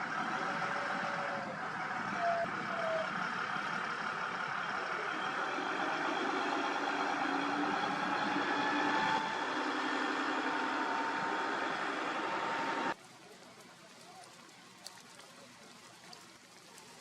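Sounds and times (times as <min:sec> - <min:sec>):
diesel construction machinery running: 0:00.0 - 0:13.0.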